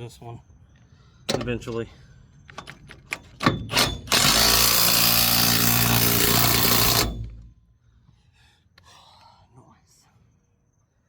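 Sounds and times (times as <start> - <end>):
knocks and clicks: 2.5 - 7.5
power tool running: 3.8 - 7.5.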